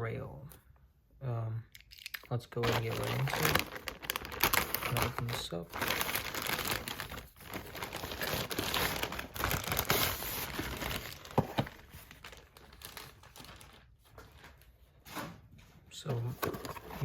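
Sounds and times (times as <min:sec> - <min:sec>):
packaging tearing and crinkling: 0:01.8 - 0:14.6.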